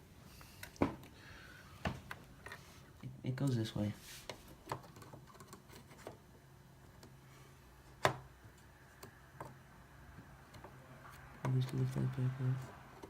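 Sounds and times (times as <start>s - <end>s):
computer parts clicking and tapping: 4.6s - 6.2s, 10.2s - 13.0s.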